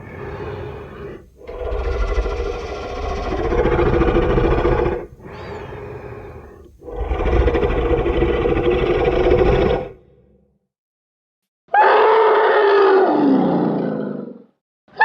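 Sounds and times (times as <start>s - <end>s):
dinosaur growl: 0.0s - 10.2s
dinosaur roaring: 0.0s - 10.2s, 11.7s - 14.5s.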